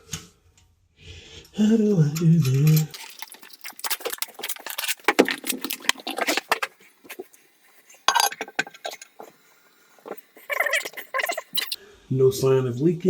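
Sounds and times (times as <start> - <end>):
hand tools clinking and knocking: 8.1 - 9.0.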